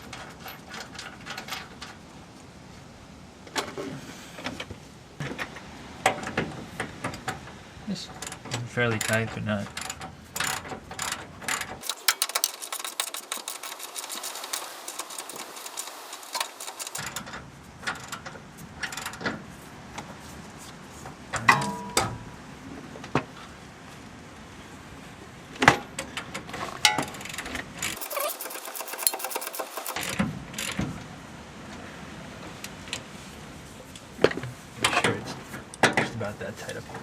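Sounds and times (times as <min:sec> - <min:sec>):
metallic clicks and knocks: 0:08.1 - 0:19.4, 0:25.6 - 0:30.8
hand ratchet clicking: 0:09.8 - 0:17.1, 0:27.2 - 0:30.8.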